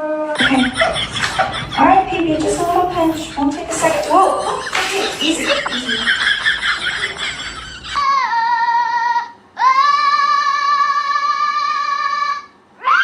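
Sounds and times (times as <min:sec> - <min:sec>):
mixed chatter: 0:00.4 - 0:08.0
synthetic high voice singing: 0:08.0 - 0:13.0.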